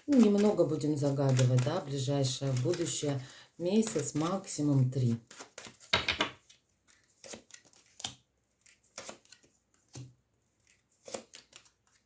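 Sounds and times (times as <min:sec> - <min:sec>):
cards snapping and sliding: 0:06.9 - 0:12.0.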